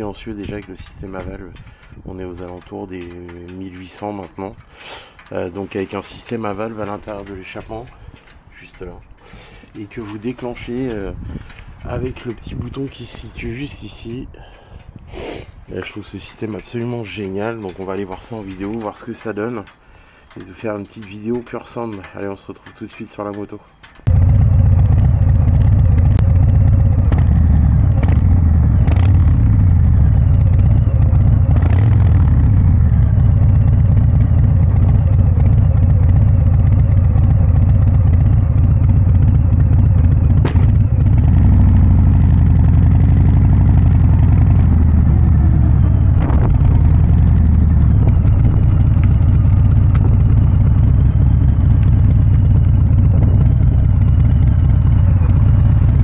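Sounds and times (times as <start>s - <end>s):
sharp clicks: 0.0s - 15.1s, 15.8s - 24.2s, 39.1s - 56.0s
motorcycle engine low rumble: 0.0s - 56.0s.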